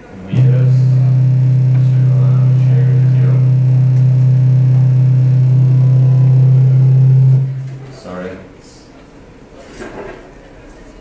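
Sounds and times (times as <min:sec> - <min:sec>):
low electronic drone: 0:00.3 - 0:08.0.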